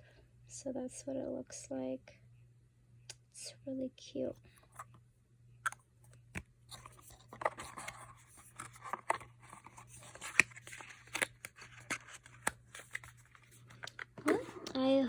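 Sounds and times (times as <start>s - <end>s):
faint steady hum: 0.0s - 15.0s
packaging rustling: 6.7s - 14.6s.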